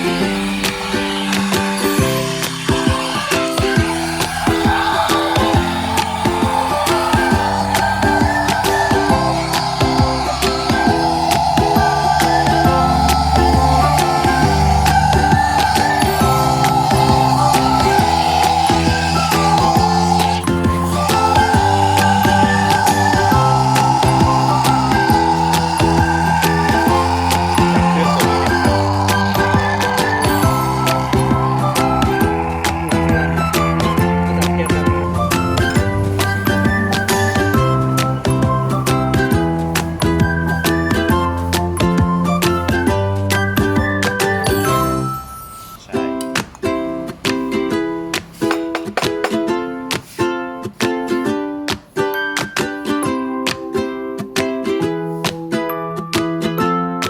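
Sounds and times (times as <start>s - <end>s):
plucked instrument music with beat: 0.0s - 45.1s, 45.9s - 57.0s
loud steady hiss: 0.0s - 45.3s
music with plucked guitar-like notes: 45.9s - 57.0s.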